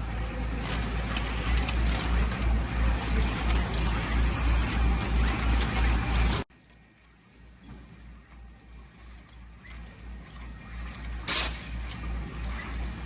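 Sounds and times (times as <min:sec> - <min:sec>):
packaging machine clattering: 0:00.1 - 0:06.4.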